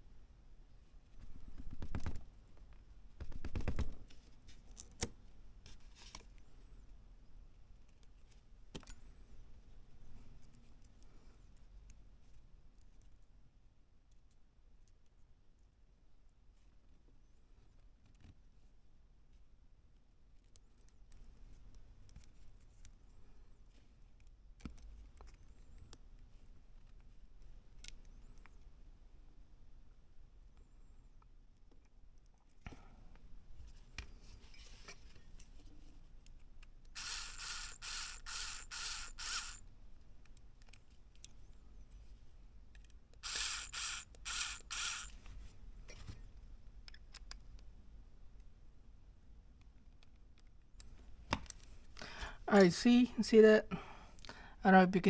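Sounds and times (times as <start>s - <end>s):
clicks and taps of small parts: 24.2s - 26.0s
small parts rattling: 37.0s - 39.6s, 43.2s - 45.2s.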